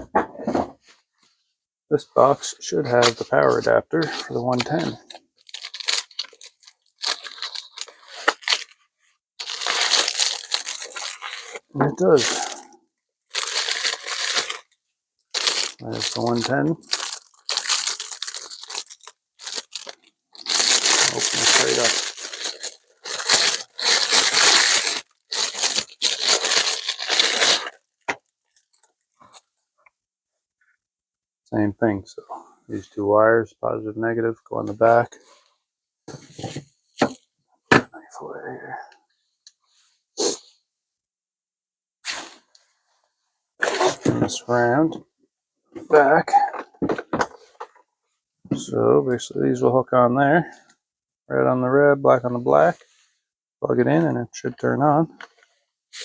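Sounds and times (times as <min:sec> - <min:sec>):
packaging crinkling and tearing: 0:02.9 - 0:08.8, 0:09.4 - 0:12.7, 0:13.3 - 0:29.6.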